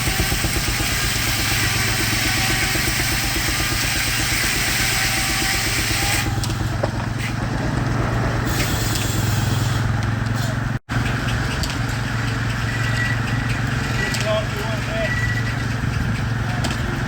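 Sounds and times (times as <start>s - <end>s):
steam engine beat: 0.0s - 10.6s
loud high steam hiss: 8.5s - 9.8s.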